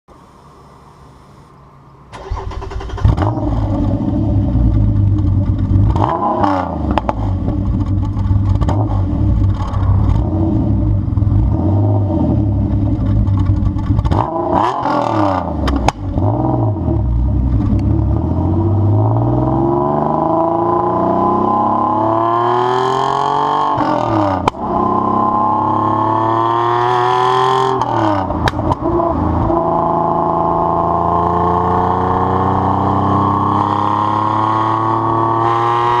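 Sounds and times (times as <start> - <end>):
car engine revving: 2.2 - 36.0
sharp exhaust pops: 6.9 - 10.3.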